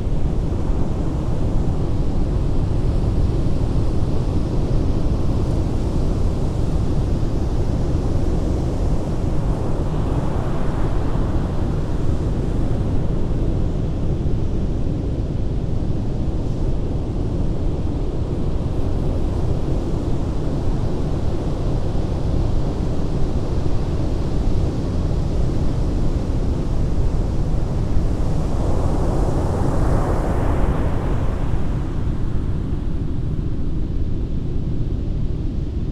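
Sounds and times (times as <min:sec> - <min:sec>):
wave washing in: 0:27.8 - 0:32.8.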